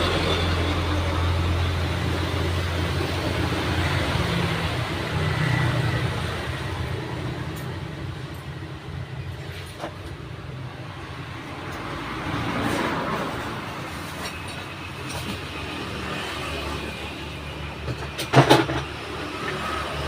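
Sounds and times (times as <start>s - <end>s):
road traffic passing: 0.0s - 20.0s
vehicle passing: 11.1s - 14.4s
loud clatter of knocks: 17.8s - 18.9s.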